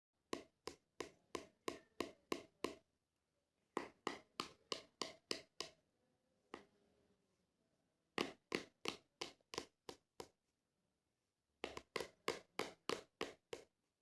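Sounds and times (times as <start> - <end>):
bird beak tapping hard object: 0.3 - 2.8, 3.8 - 5.8, 8.2 - 10.4, 11.6 - 13.7.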